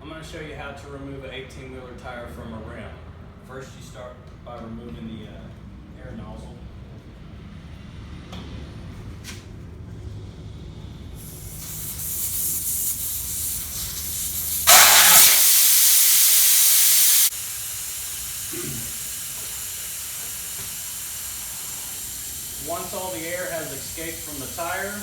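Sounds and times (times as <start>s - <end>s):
air hissing out of tire valve: 11.2s - 25.0s.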